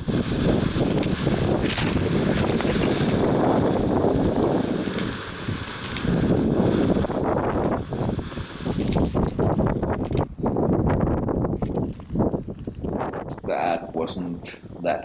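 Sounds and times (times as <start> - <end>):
firework hissing: 0.0 - 10.5
wind buffeting microphone: 0.0 - 15.0.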